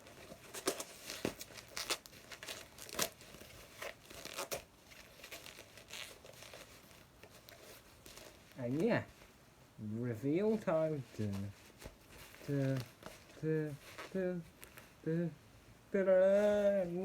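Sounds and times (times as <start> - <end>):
packaging tearing and crinkling: 0.0 - 8.7.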